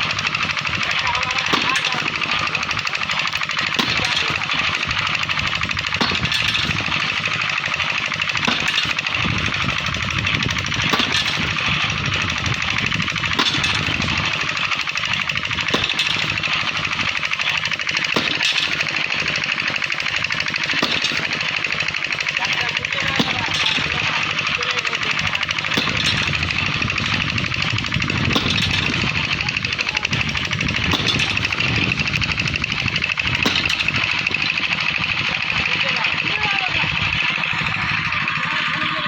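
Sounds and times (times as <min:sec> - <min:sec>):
machinery hammering rapidly: 0:00.0 - 0:39.0
sharp knocks: 0:01.3 - 0:07.2, 0:08.3 - 0:19.4, 0:20.5 - 0:21.6, 0:25.2 - 0:34.8.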